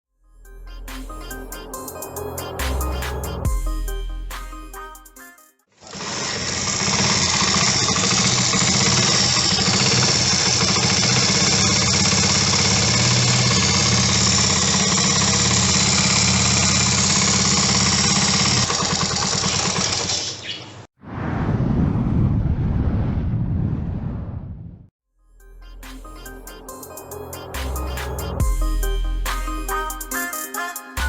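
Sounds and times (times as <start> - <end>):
timing chain rattle: 5.9 - 20.2
motorcycle engine idling: 5.9 - 20.6.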